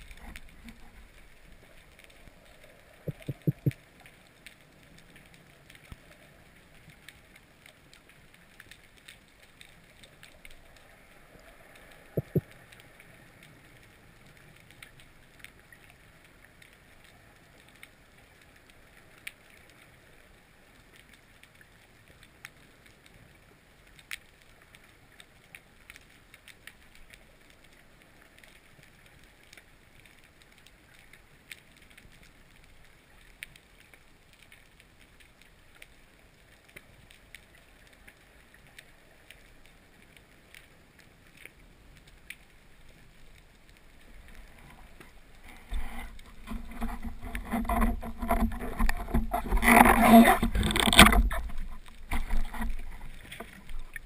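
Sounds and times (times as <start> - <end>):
sharp underwater clicks: 0.0 - 19.8, 23.9 - 54.0
rush of water movement: 0.0 - 23.1, 24.2 - 54.0
faint underwater hiss: 0.0 - 46.8.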